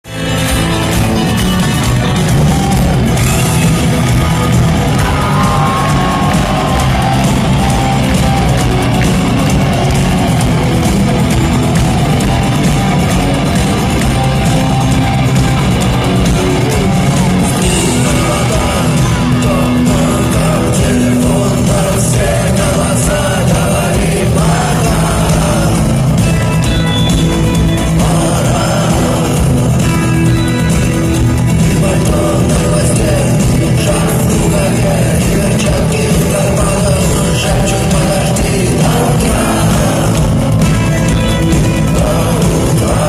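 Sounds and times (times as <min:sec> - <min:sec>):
live rock band: 0:00.0 - 0:43.0
person singing: 0:04.7 - 0:09.2, 0:16.0 - 0:43.0.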